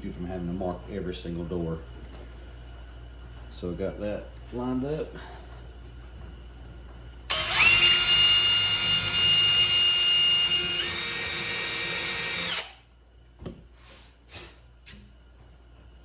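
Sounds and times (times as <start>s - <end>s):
electric drill boring wood: 7.3s - 12.8s.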